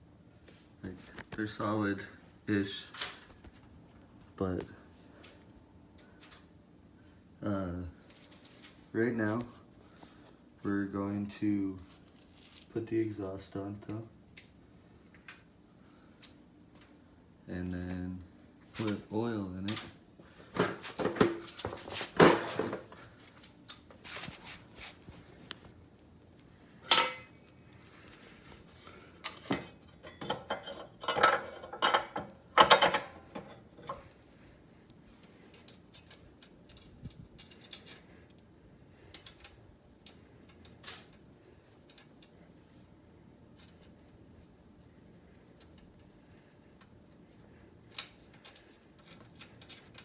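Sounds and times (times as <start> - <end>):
metal tools clinking and clanking: 26.9 - 27.5, 29.2 - 38.1, 48.0 - 50.0.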